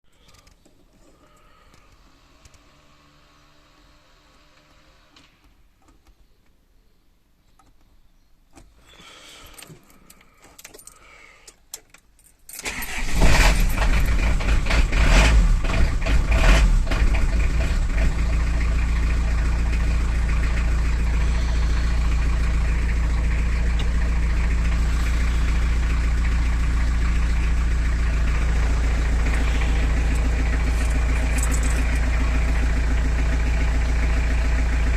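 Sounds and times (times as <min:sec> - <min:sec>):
van engine starting and idling: 0:12.5 - 0:34.9.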